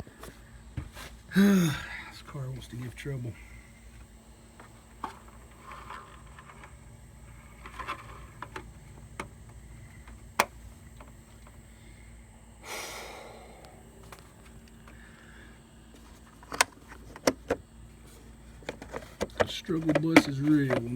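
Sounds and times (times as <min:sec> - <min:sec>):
plastic cover clicking and knocking: 0:18.6 - 0:20.9.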